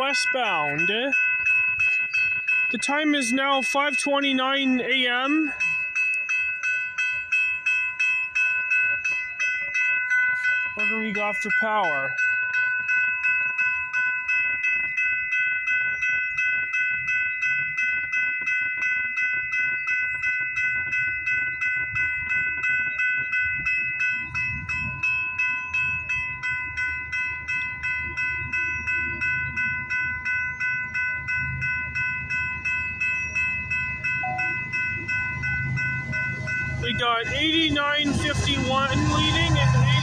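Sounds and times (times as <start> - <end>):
diesel locomotives rumbling: 0.0 - 7.9, 10.4 - 12.3, 20.9 - 40.0
railway crossing bell ringing: 0.0 - 40.0.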